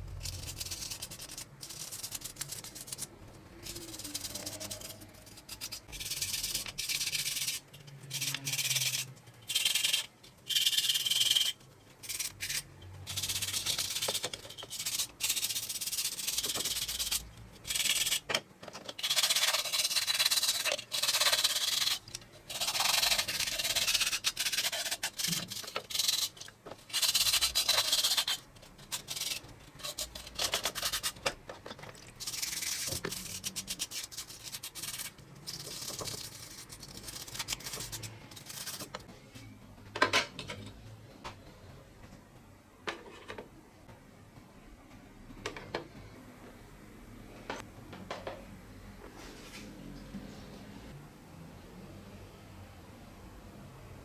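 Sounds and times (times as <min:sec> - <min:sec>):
sanding rusty metal by hand: 0:19.0 - 0:31.2.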